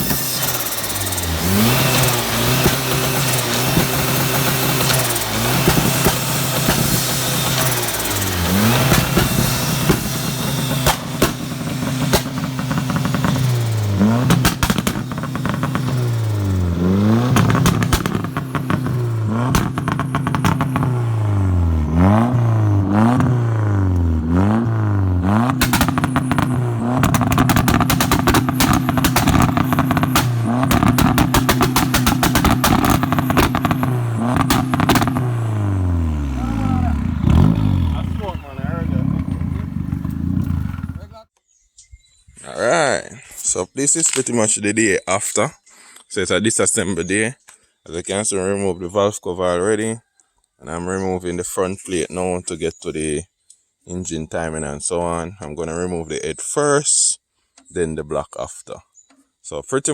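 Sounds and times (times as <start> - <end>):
engine knocking clatter: 0.0 - 20.9, 25.4 - 35.3
engine revving: 0.0 - 41.3.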